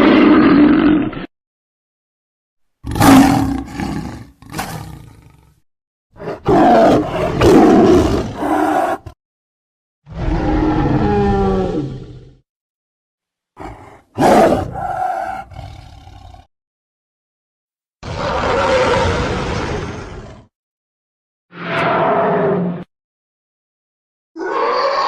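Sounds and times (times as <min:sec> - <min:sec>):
monster roars: 0:00.0 - 0:01.3, 0:02.8 - 0:05.5, 0:06.2 - 0:09.2, 0:10.1 - 0:12.4, 0:13.6 - 0:16.5, 0:18.0 - 0:20.5, 0:24.4 - 0:25.0.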